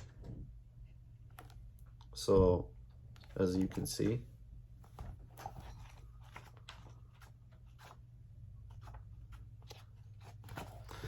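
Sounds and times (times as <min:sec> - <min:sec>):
steady low hum: 0:00.0 - 0:11.0
book rustling: 0:03.2 - 0:11.0.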